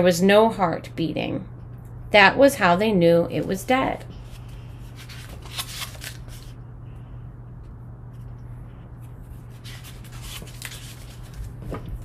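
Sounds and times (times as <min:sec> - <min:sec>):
steady low hum: 0:00.0 - 0:12.0
book pages rustling: 0:04.1 - 0:06.5, 0:09.0 - 0:12.0.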